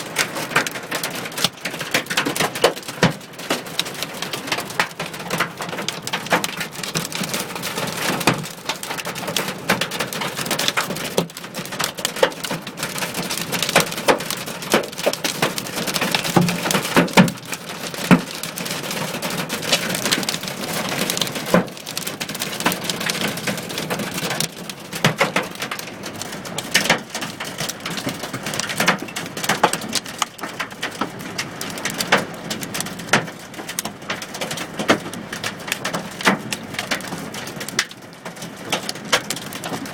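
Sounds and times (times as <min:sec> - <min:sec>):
hailstones hitting car roof: 0:00.0 - 0:39.9.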